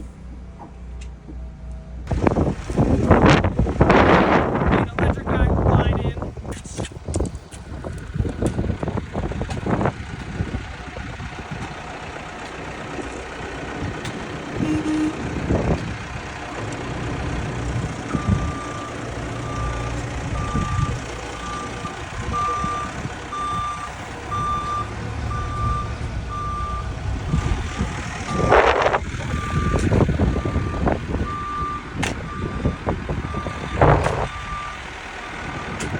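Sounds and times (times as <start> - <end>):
diesel engine rumbling: 0.0 - 35.9
reversing alarm beeps: 14.6 - 15.2, 18.1 - 27.4, 28.3 - 34.8.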